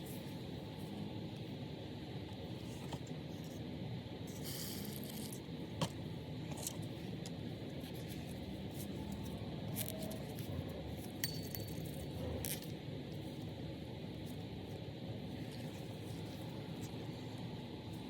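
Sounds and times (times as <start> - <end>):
small metal parts clicking and clinking: 11.1 - 12.7.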